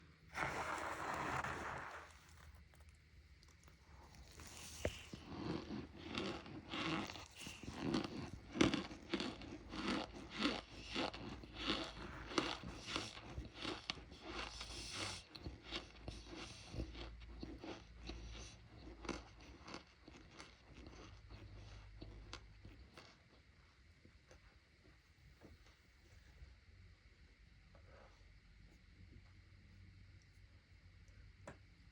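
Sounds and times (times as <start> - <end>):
cornstarch being bitten and chewed: 0.3 - 23.6.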